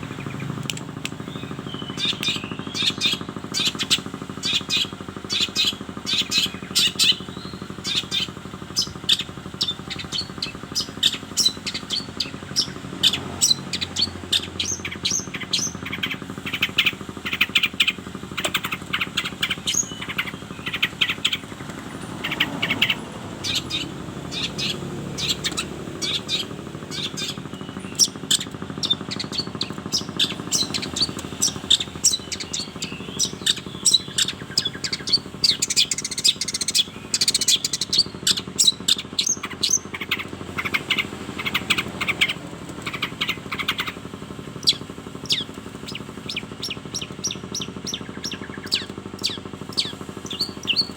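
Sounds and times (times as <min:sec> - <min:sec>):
bird chirping rapidly: 0:00.0 - 0:50.9
low steady hum: 0:00.0 - 0:50.9.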